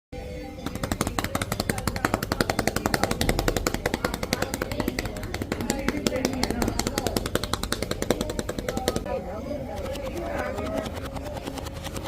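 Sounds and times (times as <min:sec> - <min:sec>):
cupped hands clapping on chest: 0:00.6 - 0:09.1.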